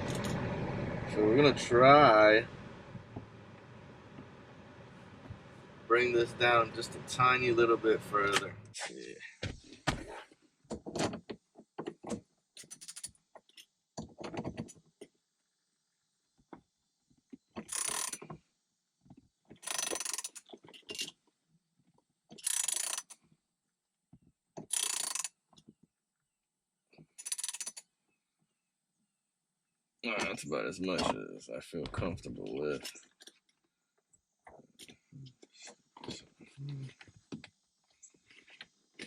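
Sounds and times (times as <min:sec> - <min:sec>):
rasping ratchet strokes: 0:17.6 - 0:18.2, 0:19.6 - 0:20.6, 0:22.4 - 0:23.2, 0:24.7 - 0:25.3, 0:27.2 - 0:27.8.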